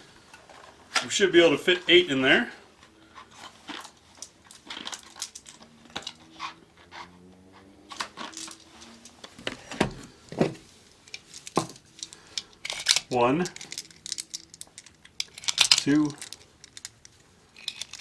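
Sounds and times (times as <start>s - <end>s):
cartridges and magazine clicking: 11.1s - 18.0s.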